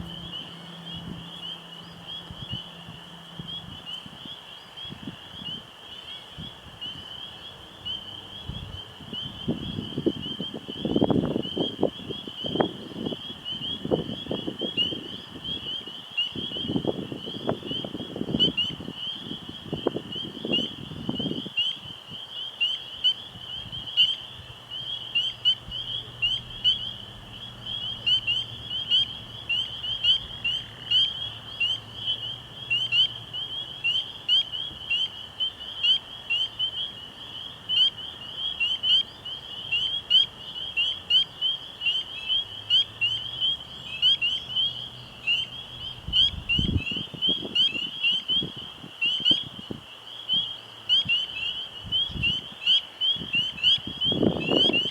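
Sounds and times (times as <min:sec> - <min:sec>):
frogs peeping: 0:00.0 - 0:54.9
wind gusts rumbling: 0:25.4 - 0:33.4, 0:45.0 - 0:49.8.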